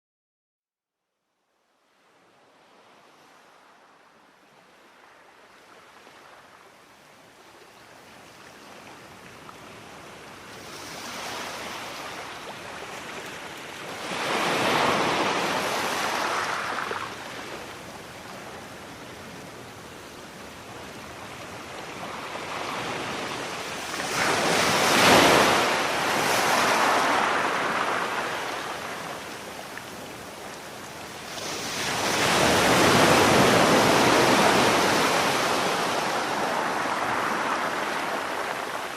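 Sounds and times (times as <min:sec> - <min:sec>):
sea waves washing onto shore: 0:08.2 - 0:38.9.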